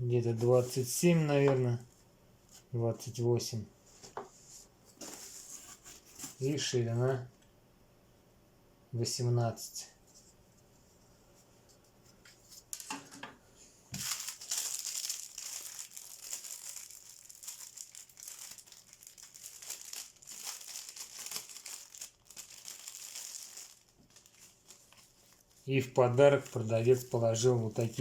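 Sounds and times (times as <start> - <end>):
plastic packaging crinkling: 13.9 - 28.0.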